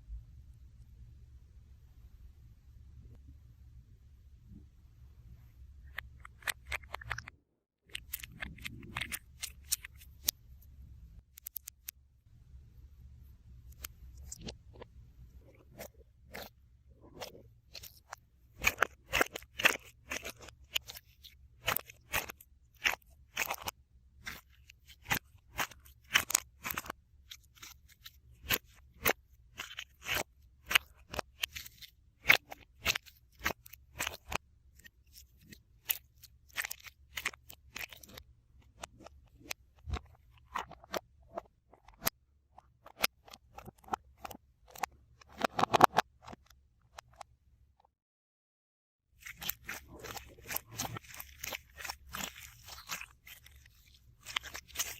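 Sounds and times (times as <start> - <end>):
crisp snips and crunches: 17.1 - 38.2, 49.2 - 54.9.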